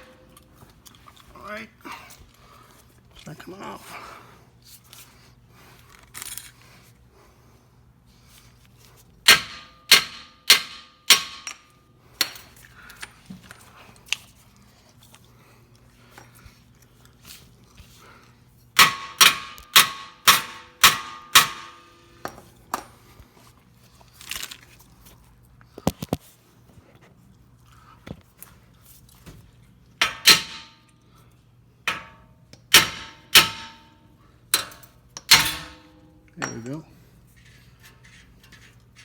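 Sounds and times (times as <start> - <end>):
hammer striking metal: 9.3 - 11.6, 18.8 - 22.4, 30.0 - 30.8, 31.9 - 34.0, 34.6 - 36.8.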